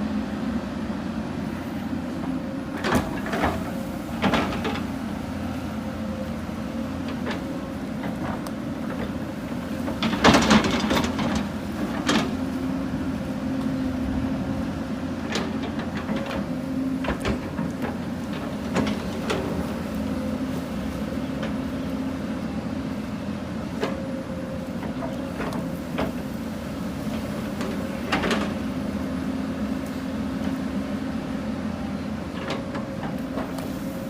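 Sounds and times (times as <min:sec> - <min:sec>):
diesel engine running: 0:00.0 - 0:34.0
machine clanks and knocks: 0:02.8 - 0:04.9, 0:09.8 - 0:12.4, 0:27.1 - 0:28.7.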